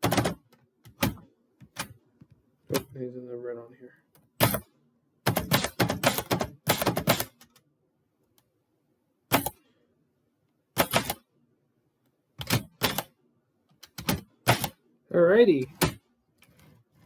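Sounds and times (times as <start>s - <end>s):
typewriter keys clicking: 0.0s - 1.9s.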